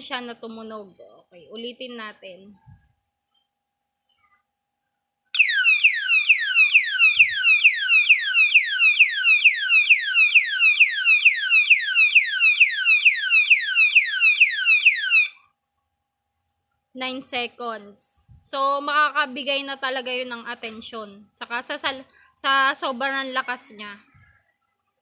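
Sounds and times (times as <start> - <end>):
alarm siren wailing: 5.4 - 15.4.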